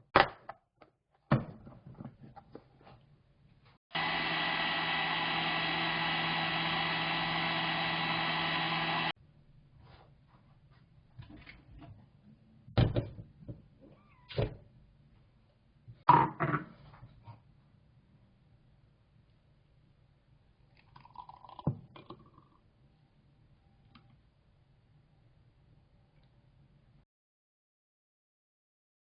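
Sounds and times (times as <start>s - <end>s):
electric motor running: 3.9s - 9.1s.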